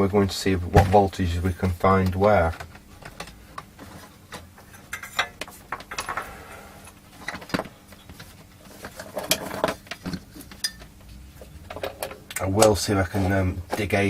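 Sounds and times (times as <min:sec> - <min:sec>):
faint steady hum: 0:00.0 - 0:14.0
hard objects clicking and rattling: 0:02.4 - 0:12.8.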